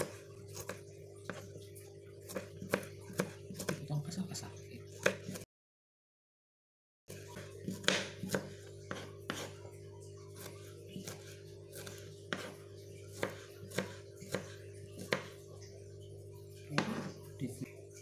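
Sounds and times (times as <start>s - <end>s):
knife slicing shallots: 2.2s - 3.9s, 7.2s - 9.6s, 10.4s - 15.4s.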